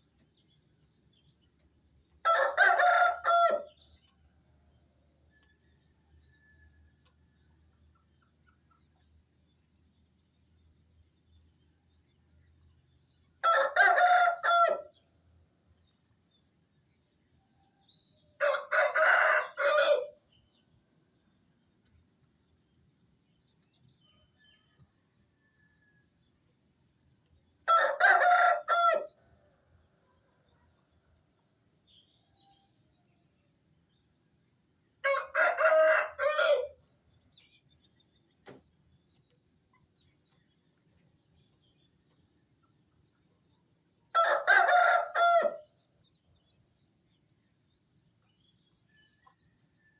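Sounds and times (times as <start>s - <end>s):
crickets chirring: 0.0s - 49.9s
roosters crowing: 2.2s - 3.8s, 13.4s - 14.9s, 18.4s - 20.2s, 27.7s - 29.2s, 35.0s - 36.8s, 44.2s - 45.7s.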